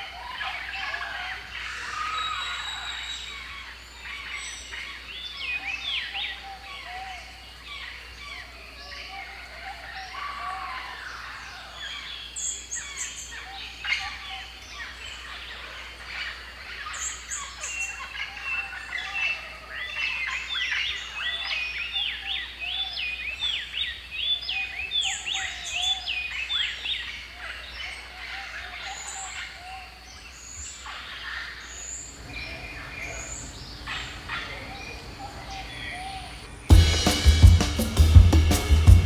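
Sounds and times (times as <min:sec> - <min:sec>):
low warbling bird call: 0:00.0 - 0:07.4, 0:32.1 - 0:39.0
sweeping whistled bird notes: 0:00.0 - 0:10.3, 0:30.1 - 0:37.2.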